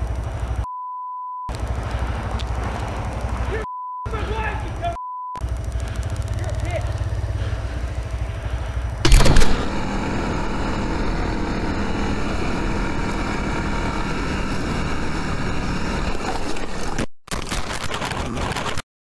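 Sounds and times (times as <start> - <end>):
motorcycle engine running: 0.0 - 0.6, 1.5 - 17.0
wind and road noise: 1.5 - 17.1
loud burst: 9.0 - 15.0.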